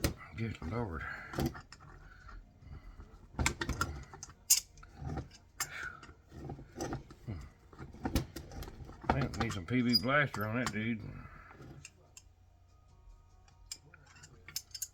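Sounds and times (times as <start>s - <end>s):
wrench clanking on metal: 3.4s - 12.2s, 13.6s - 14.9s.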